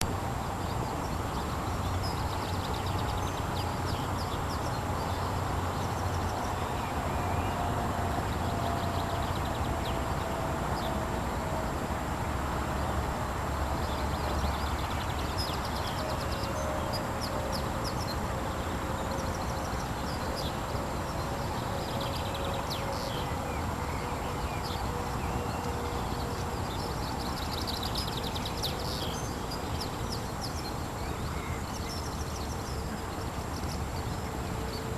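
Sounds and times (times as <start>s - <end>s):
wind-like hiss: 0.0s - 34.9s.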